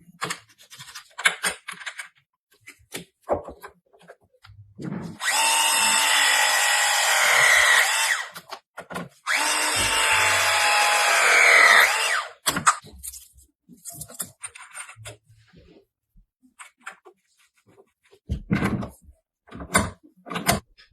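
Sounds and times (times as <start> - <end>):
power drill whining: 5.2 - 8.4, 9.3 - 12.4.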